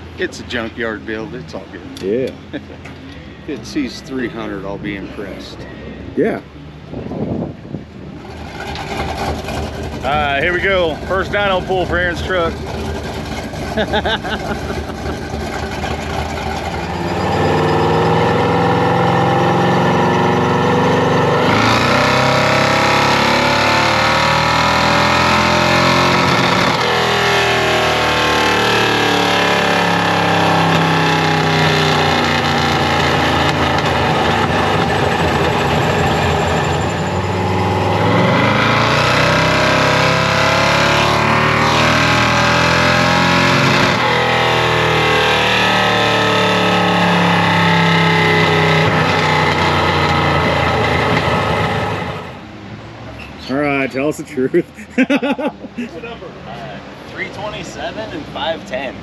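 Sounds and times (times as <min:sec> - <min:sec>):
pickup engine revving: 0:08.1 - 0:52.4.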